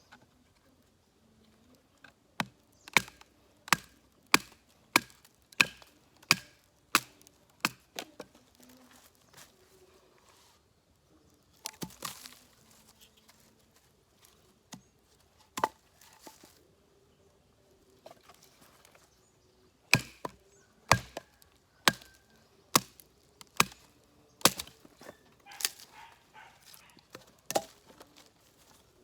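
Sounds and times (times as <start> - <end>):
wood cracking: 1.9 - 9.0, 11.6 - 12.5, 19.9 - 28.8
knife chopping into dry wood: 2.4 - 8.4, 11.6 - 12.4, 15.6 - 16.5, 19.9 - 25.9, 26.6 - 28.3.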